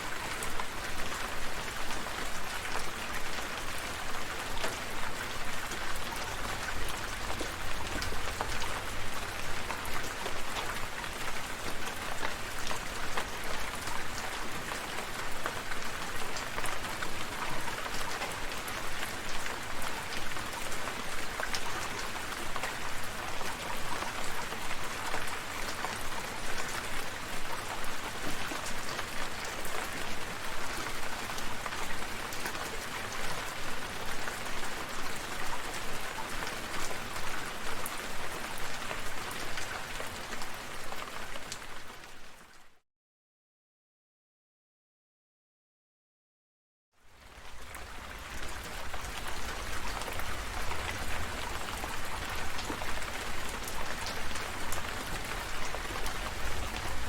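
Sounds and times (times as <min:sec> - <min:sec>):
rain drops pattering: 0:00.0 - 0:42.6, 0:47.0 - 0:57.0
hiss of downpour: 0:47.0 - 0:57.0.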